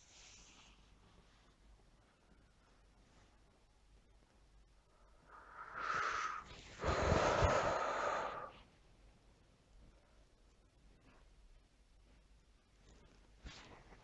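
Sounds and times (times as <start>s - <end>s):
person breathing heavily: 5.0s - 8.7s.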